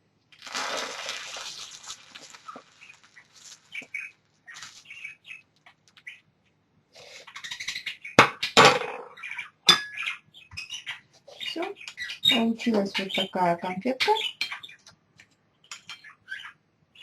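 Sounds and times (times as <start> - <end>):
hot sugar hissing in milk: 0.4 - 3.9
faint crackles and squeaks: 1.1 - 6.3, 7.1 - 17.0.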